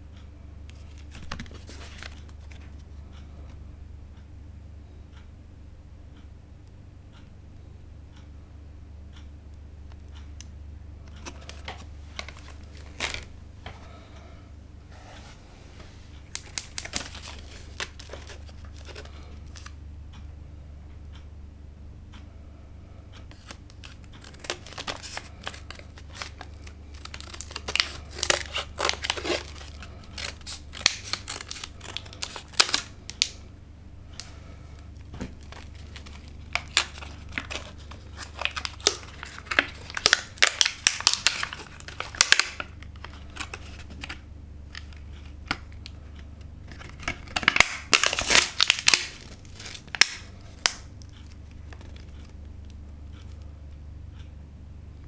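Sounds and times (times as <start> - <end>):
faint low hum: 0.0 - 55.0
packaging crinkling and tearing: 0.8 - 2.8, 11.1 - 14.1, 15.0 - 19.8, 23.3 - 33.4, 34.1 - 45.9, 46.7 - 52.4.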